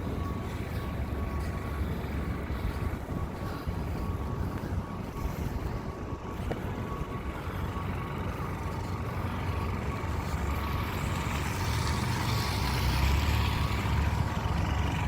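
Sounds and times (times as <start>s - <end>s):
city background noise: 0.0s - 15.0s
vehicle passing: 6.8s - 15.0s.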